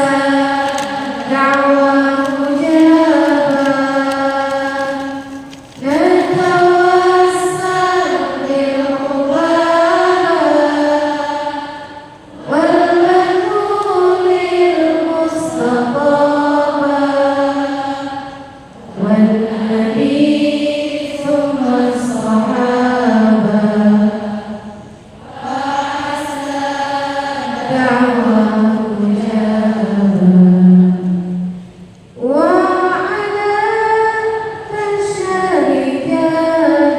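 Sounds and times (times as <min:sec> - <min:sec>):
woman chanting: 0:00.0 - 0:31.5, 0:32.2 - 0:36.9.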